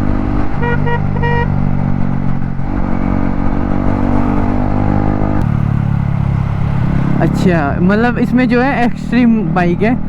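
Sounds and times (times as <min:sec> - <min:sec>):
motorcycle engine running: 0:00.0 - 0:10.0
vehicle horn toots: 0:00.6 - 0:01.6.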